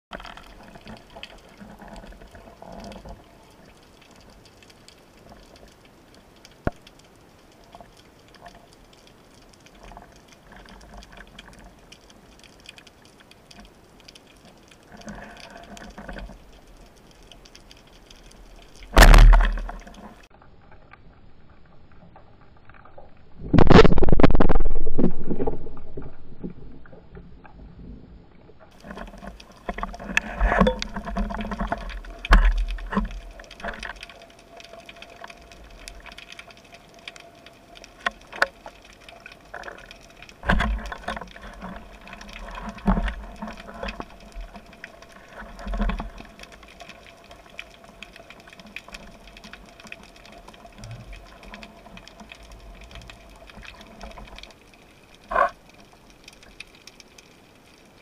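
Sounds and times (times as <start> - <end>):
underwater rushing burst: 18.9 - 20.2, 23.4 - 27.0.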